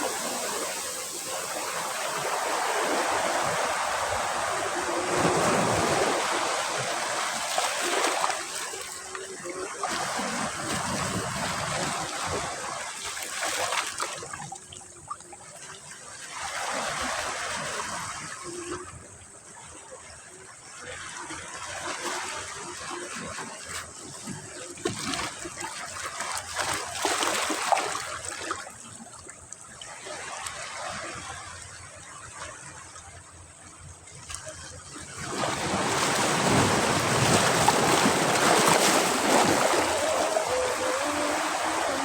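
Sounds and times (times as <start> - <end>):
sea waves breaking on beach: 0.0 - 14.5, 34.8 - 42.0.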